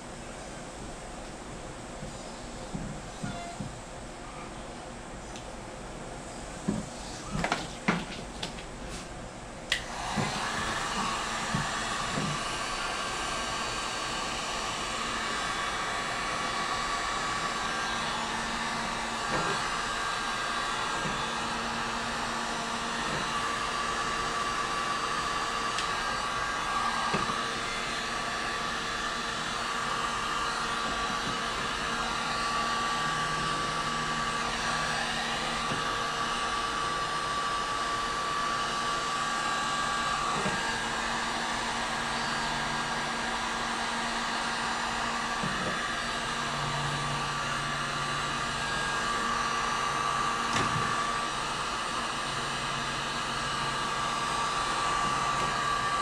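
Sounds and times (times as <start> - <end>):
heat gun blowing: 9.7 - 56.0.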